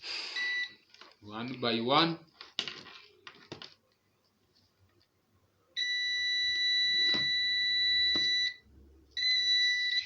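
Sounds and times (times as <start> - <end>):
multimeter continuity beep: 0.4 - 0.8, 5.8 - 8.6.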